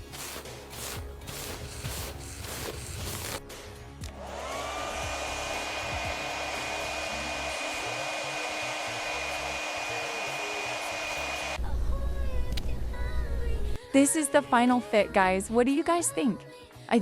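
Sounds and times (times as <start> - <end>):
hair dryer blowing: 0.0 - 3.4, 4.1 - 11.6.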